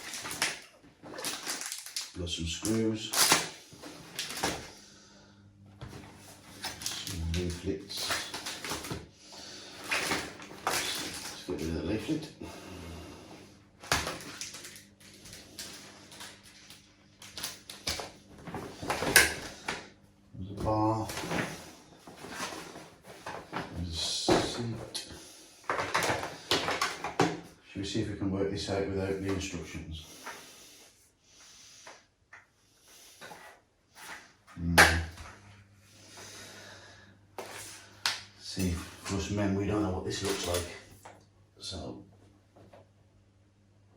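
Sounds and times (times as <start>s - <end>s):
packaging rustling: 0.0s - 4.7s, 5.9s - 11.7s, 13.8s - 19.8s, 21.0s - 25.0s, 25.7s - 27.4s
low steady hum: 0.0s - 30.2s
soft rustles and scrapes: 20.6s - 25.1s.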